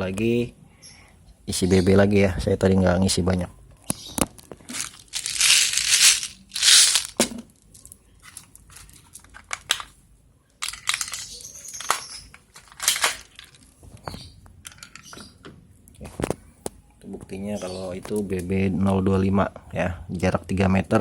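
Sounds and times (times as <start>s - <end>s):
pellets rustling and clicking: 4.5s - 9.9s.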